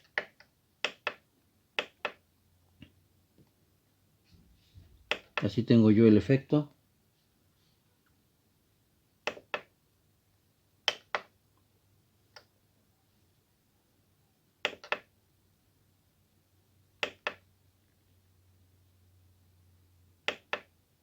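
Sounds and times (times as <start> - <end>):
plastic buttons clicking: 14.6 - 15.1.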